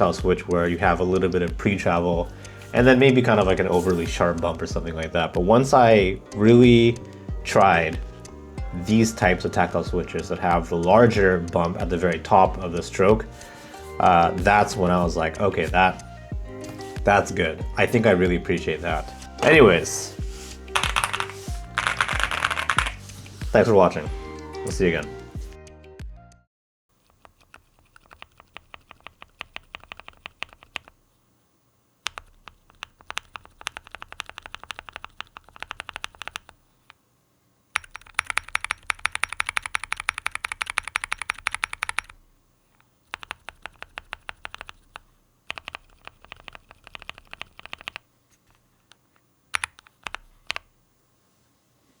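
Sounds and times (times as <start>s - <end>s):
mechanical keyboard typing: 20.7s - 23.1s, 27.0s - 31.0s, 32.0s - 36.6s, 37.8s - 42.2s, 43.1s - 48.0s, 49.5s - 50.7s.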